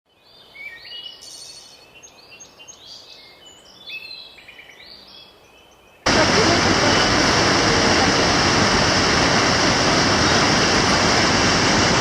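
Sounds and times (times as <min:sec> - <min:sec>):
birds chirping and trilling: 0:00.1 - 0:06.1.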